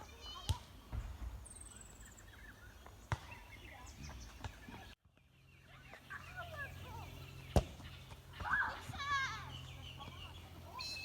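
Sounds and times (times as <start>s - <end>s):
small birds chirping: 0.0s - 11.0s
high fast bird trill: 10.8s - 11.0s.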